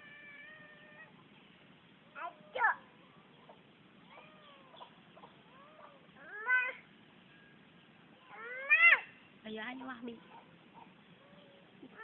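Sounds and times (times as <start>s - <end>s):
cat meowing: 4.1s - 4.8s.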